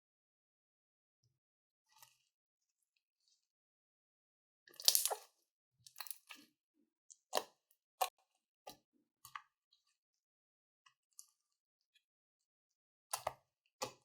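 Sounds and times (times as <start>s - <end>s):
slime squished by hand: 4.8s - 5.2s.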